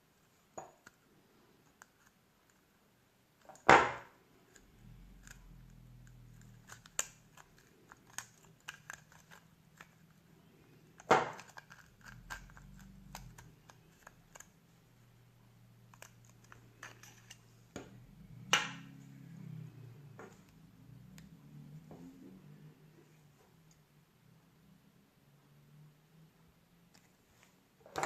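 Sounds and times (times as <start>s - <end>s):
faint low hum: 0.0s - 28.0s.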